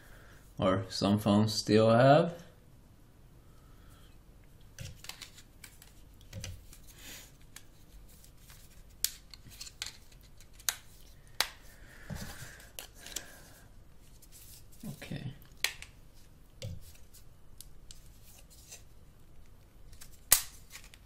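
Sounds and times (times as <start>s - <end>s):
sharp plastic snaps: 9.0s - 11.6s, 15.4s - 16.0s, 19.9s - 21.0s.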